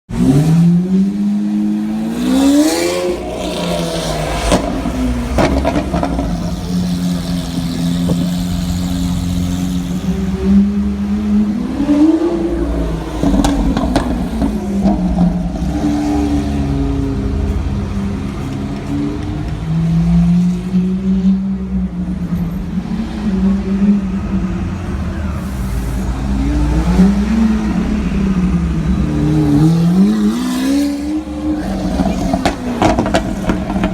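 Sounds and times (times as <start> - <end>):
sports car engine revving: 0.1 - 21.4, 22.7 - 33.9
exhaust crackles: 25.0 - 33.9.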